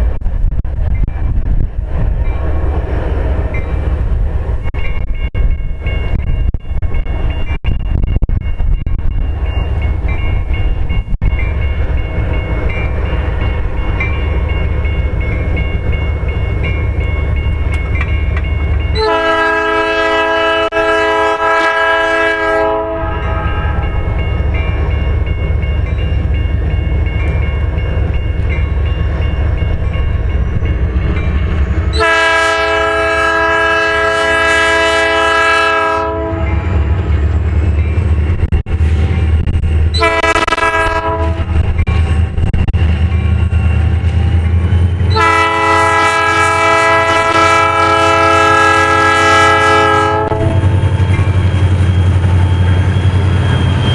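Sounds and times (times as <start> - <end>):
train rumbling: 0.0 - 53.9
locomotive horn blasts: 19.0 - 24.1, 31.9 - 36.8, 39.9 - 41.5, 45.1 - 50.8.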